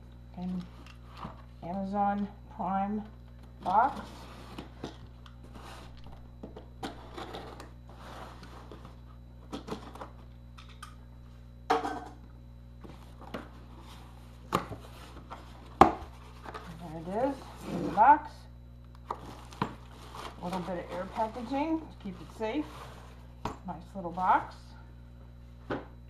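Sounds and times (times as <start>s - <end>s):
steady low hum: 0.0s - 26.0s
cardboard box scraping and rustling: 7.0s - 8.9s, 19.2s - 23.3s.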